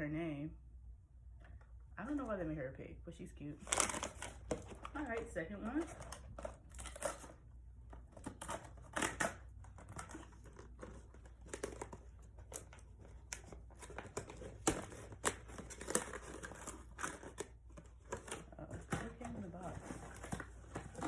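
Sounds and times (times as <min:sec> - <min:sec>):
packaging crinkling and tearing: 0:03.6 - 0:21.0.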